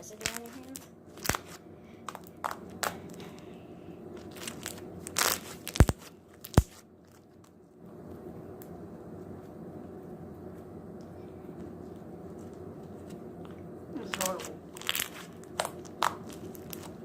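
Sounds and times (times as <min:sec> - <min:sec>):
slime squished in hands: 0:04.2 - 0:06.8.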